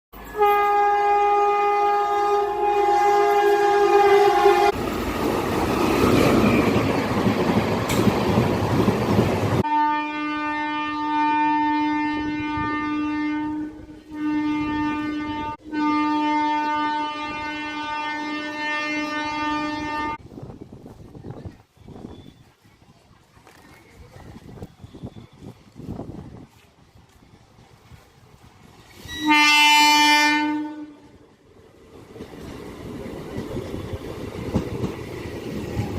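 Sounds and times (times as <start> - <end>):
train horn blast: 0.2 - 4.8, 9.6 - 20.2, 29.1 - 31.2
train wheels rushing on rails: 2.4 - 9.7, 20.1 - 35.9.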